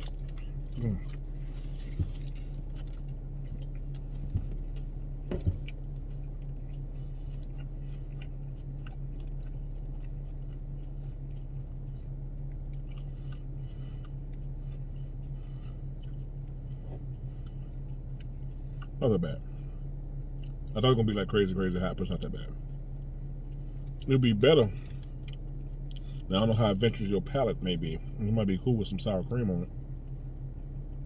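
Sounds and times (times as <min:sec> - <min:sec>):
person chewing crunchy food: 0:00.0 - 0:19.0
steady low hum: 0:00.0 - 0:31.0.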